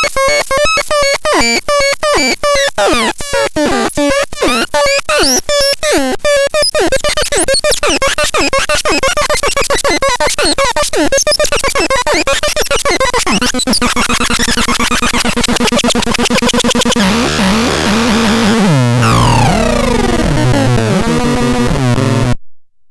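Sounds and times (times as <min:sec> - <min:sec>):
pulsing synthesizer tone: 0:10.4 - 0:22.4
synthesizer bass notes: 0:11.1 - 0:22.4.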